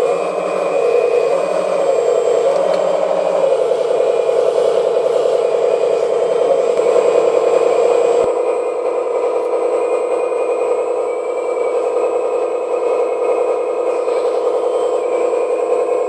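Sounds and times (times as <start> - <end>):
hydraulic pump whirring: 0.0 - 16.0
simulated diesel engine sound: 0.0 - 16.0
click: 2.5 - 2.9.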